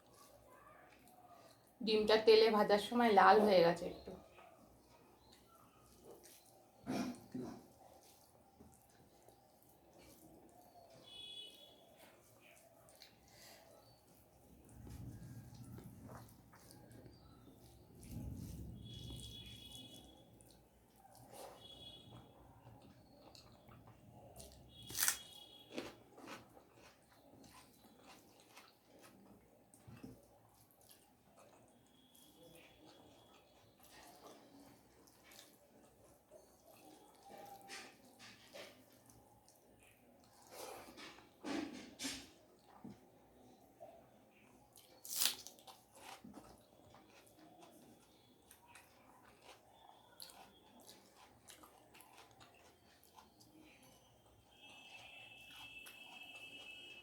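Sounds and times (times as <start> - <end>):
chewing with crunches: 4.0 - 57.0
person chewing and biting: 22.8 - 29.3, 44.8 - 53.6
crisp bite: 24.8 - 25.4, 44.8 - 46.2.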